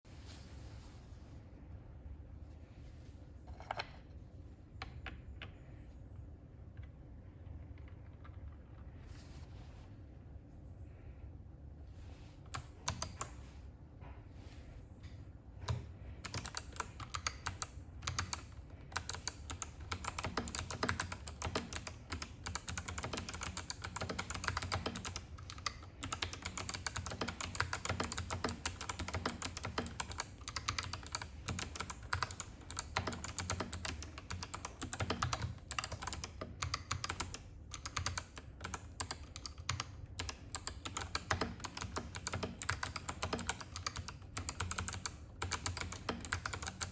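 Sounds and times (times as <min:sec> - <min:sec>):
clicky mechanical keyboard typing: 0:12.5 - 0:13.4, 0:15.6 - 0:46.9.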